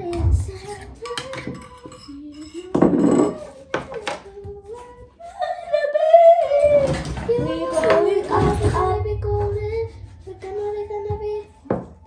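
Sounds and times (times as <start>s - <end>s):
dishes clattering: 0.0s - 4.2s
person singing: 6.0s - 11.7s.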